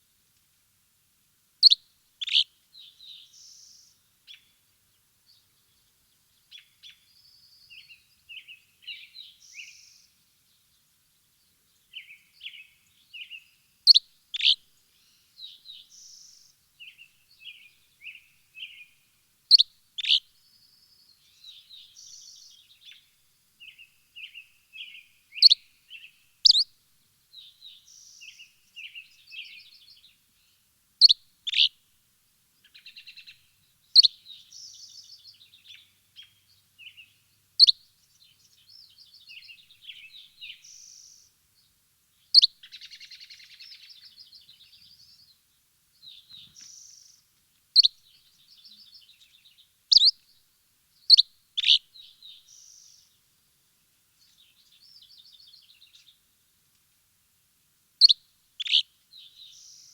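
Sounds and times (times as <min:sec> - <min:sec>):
sharp bird chirps: 0:26.4 - 0:26.6, 0:49.9 - 0:50.2, 0:51.1 - 0:51.8, 0:58.0 - 0:58.8.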